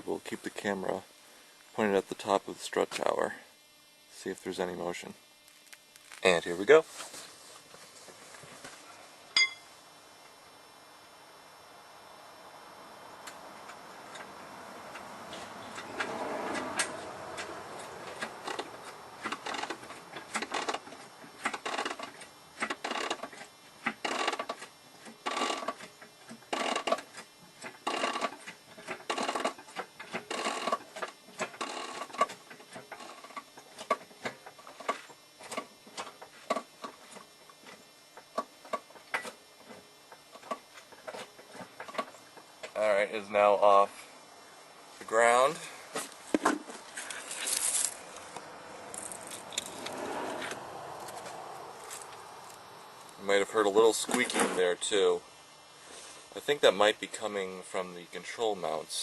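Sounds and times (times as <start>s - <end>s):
suspension squeaking: 14.1s - 21.0s.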